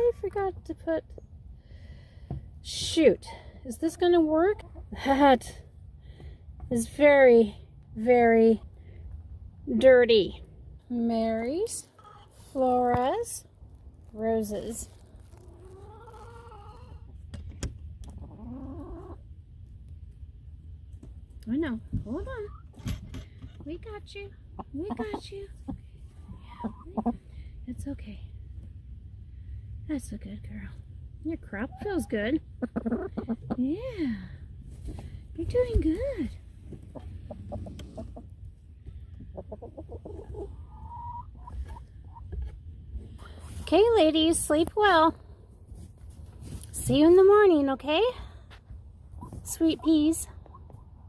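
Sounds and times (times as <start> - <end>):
hens clucking: 15.4 - 17.2, 18.0 - 19.2, 24.4 - 27.3, 31.5 - 33.6, 35.8 - 42.6, 49.0 - 51.0.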